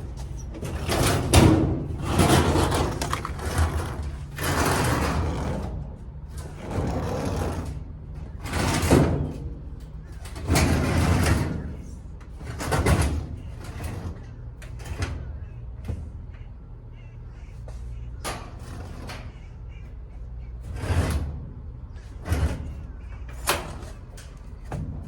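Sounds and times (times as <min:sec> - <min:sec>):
steady low hum: 0:00.0 - 0:25.0
goods scraping and sliding: 0:02.0 - 0:09.0.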